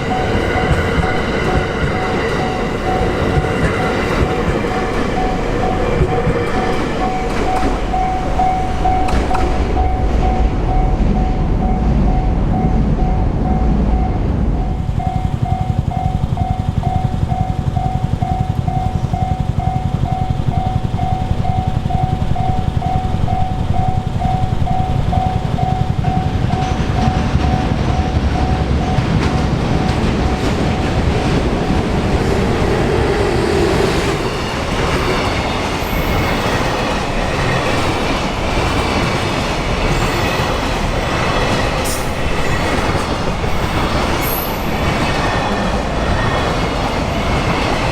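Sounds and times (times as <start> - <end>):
passing train rumble and clatter: 0.0 - 47.9
railway crossing warning bell: 0.0 - 47.9
high wheel squeal: 41.6 - 47.5.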